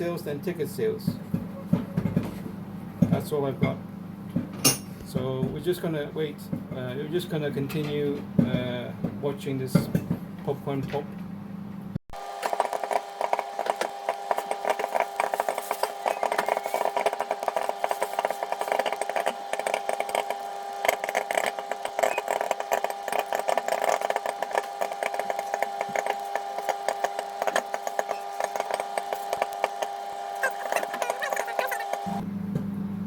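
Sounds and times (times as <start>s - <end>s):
microwave oven humming: 0.0s - 33.0s
popcorn popping: 12.2s - 32.3s.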